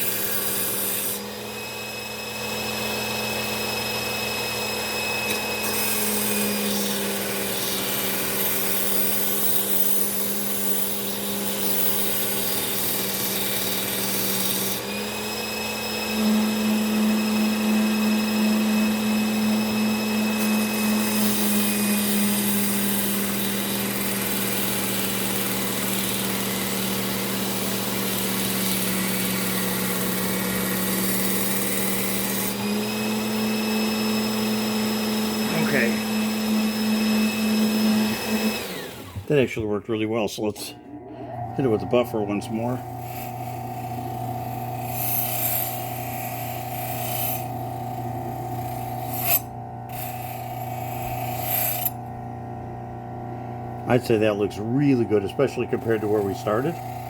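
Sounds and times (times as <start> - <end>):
bench grinder whining: 0.0 - 57.0
knife blade rubbing on wheel: 48.8 - 52.0.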